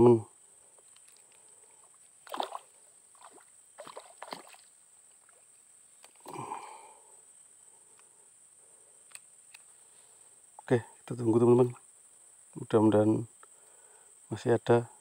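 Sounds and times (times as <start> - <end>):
splashes in shallow water: 2.2 - 5.4.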